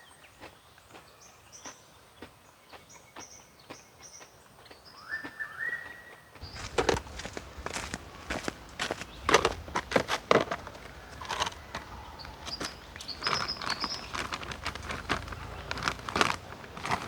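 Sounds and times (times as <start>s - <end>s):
rustling handling noises: 6.4s - 17.0s.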